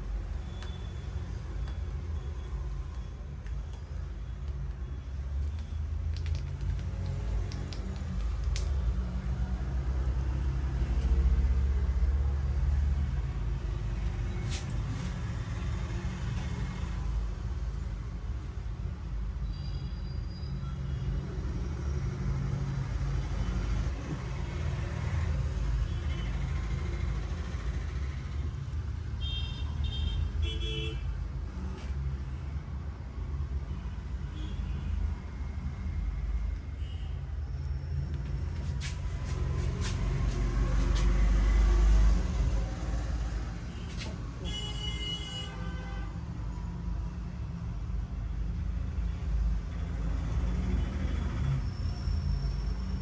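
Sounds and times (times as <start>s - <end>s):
sharp clicks: 5.4s - 8.9s.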